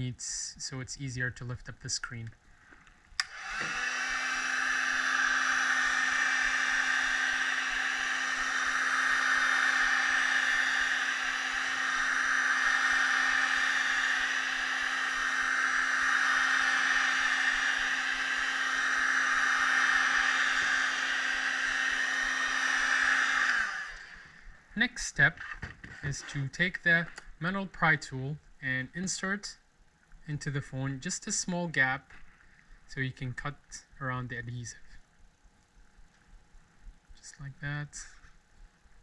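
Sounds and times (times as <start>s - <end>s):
hot air gun fan humming: 2.5s - 27.2s
hot air gun switch click: 3.2s - 3.8s.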